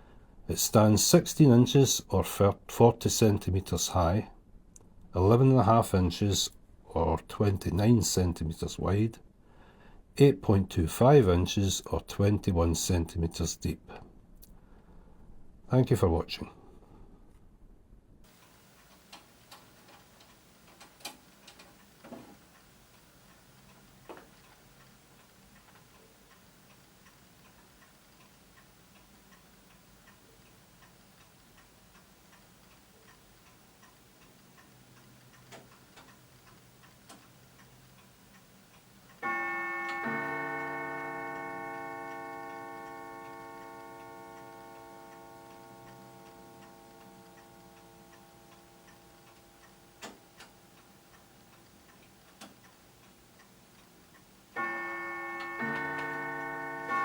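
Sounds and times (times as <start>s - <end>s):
clock ticking: 18.3s - 57.0s
clock gongs striking: 39.2s - 49.7s, 54.6s - 57.0s.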